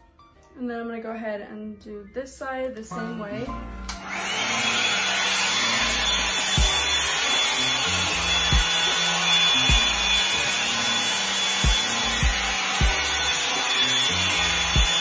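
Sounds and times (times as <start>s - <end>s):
hair dryer blowing air: 3.9s - 15.0s
background music with beat: 6.4s - 10.5s, 11.6s - 13.4s, 14.0s - 15.0s.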